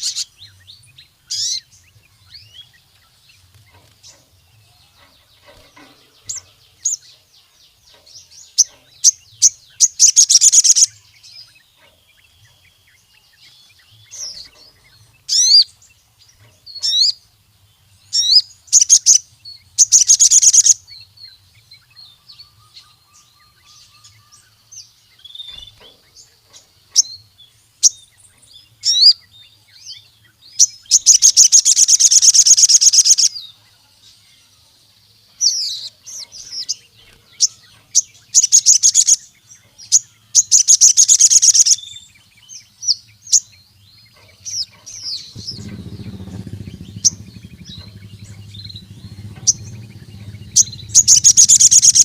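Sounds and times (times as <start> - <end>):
bird high chirps: 0.0 - 17.3, 17.9 - 52.0
bird buzzy trills: 1.1 - 12.8, 13.4 - 20.9, 30.6 - 33.4, 44.1 - 52.0.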